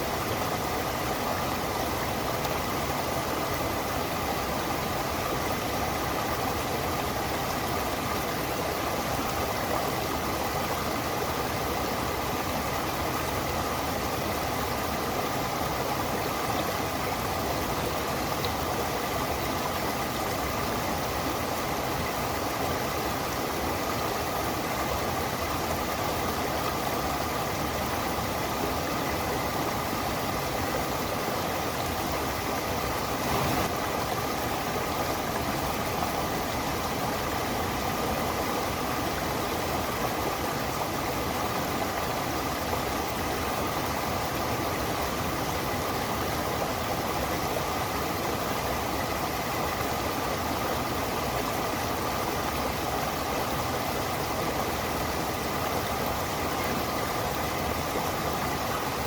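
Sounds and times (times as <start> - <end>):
stream and waterfall rushing: 0.0 - 59.0.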